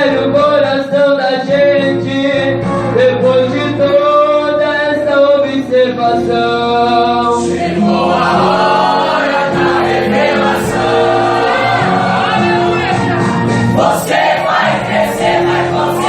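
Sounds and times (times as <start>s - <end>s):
musical accompaniment: 0.0s - 16.0s
choir singing a hymn: 6.6s - 16.0s.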